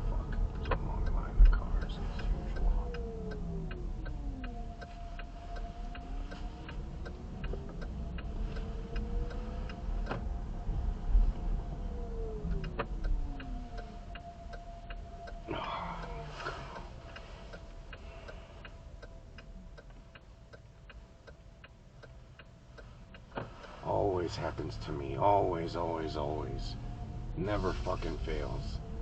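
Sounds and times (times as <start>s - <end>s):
steady ticking: 0.0s - 11.2s, 11.8s - 26.5s
faint steady tone: 0.0s - 29.0s
low road rumble: 0.0s - 29.0s.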